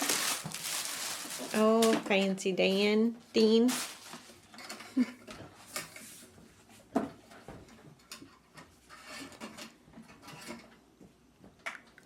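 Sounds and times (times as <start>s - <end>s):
packaging rustling: 0.0s - 2.3s, 3.6s - 4.4s.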